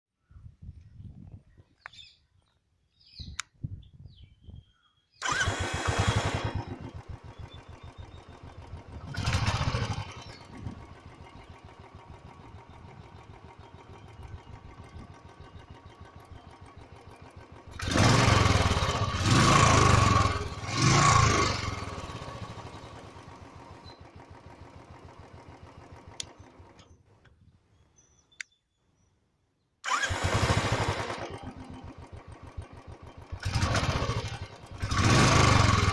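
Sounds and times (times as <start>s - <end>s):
motorcycle engine idling and revving: 5.2s - 27.4s, 29.8s - 35.9s.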